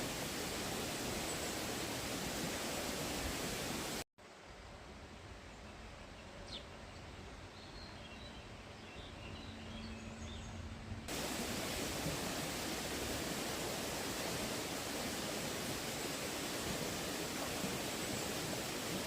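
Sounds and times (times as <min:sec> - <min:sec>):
rushing water: 0:00.0 - 0:04.1, 0:11.1 - 0:19.0.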